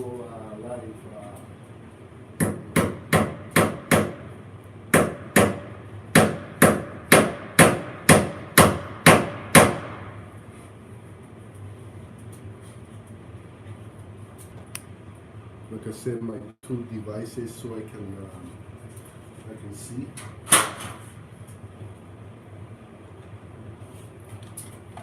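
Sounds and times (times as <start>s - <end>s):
pliers striking as a hammer: 4.9s - 10.0s.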